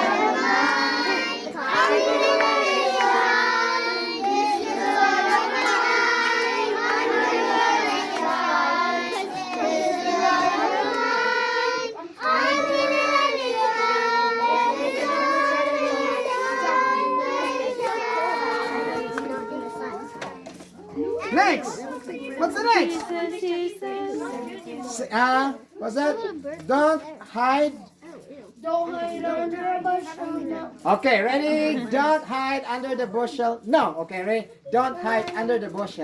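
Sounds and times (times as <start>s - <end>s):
children singing: 0.0s - 20.4s.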